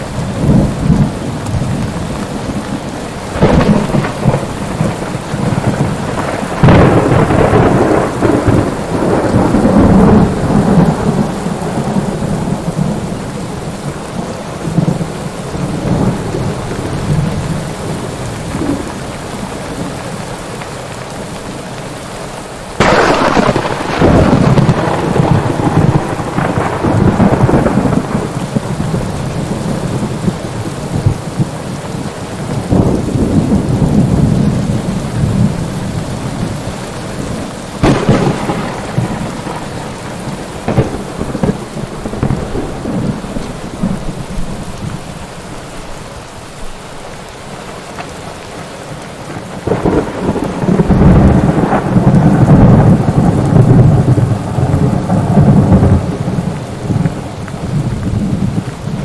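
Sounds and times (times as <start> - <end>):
rolling thunder: 0.0 - 14.0, 22.8 - 45.3, 49.3 - 59.0
steady rain: 0.0 - 59.0
sharp thunder cracks: 3.3 - 12.9, 22.8 - 30.2, 37.8 - 44.6, 49.6 - 58.5.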